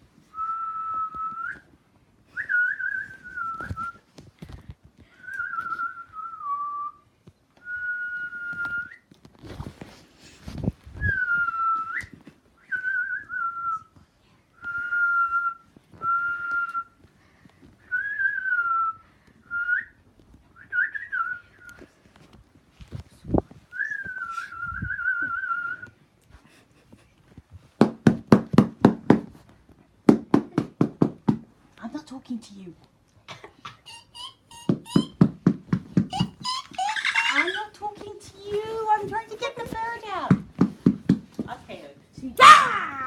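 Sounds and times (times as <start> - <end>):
person whistling: 0.3 - 1.7, 2.3 - 4.0, 5.1 - 7.0, 7.6 - 9.0, 11.0 - 13.9, 14.6 - 17.0, 17.9 - 20.0, 20.6 - 21.8, 23.7 - 26.0
sharp taps or claps: 34.7 - 36.2, 40.3 - 41.5.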